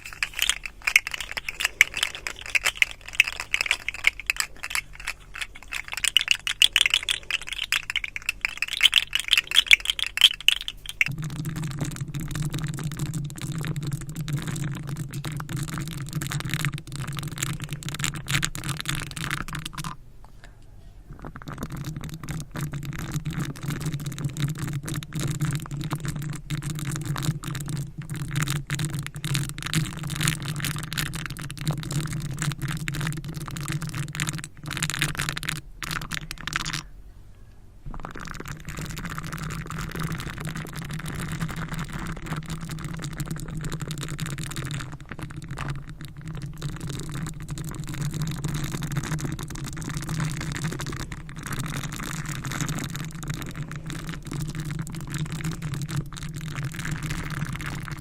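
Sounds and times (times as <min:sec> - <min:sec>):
crackly scratching: 0:00.0 - 0:20.0, 0:37.9 - 0:58.0
steady low hum: 0:00.0 - 0:26.6.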